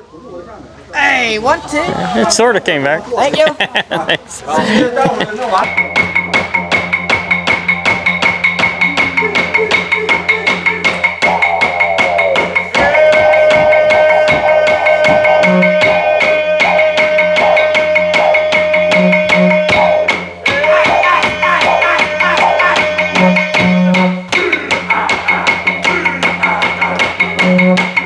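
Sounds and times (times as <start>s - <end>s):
wood block clicking beat: 4.7s - 28.0s
held higher tone: 5.6s - 28.0s
steady low drone: 5.6s - 28.0s.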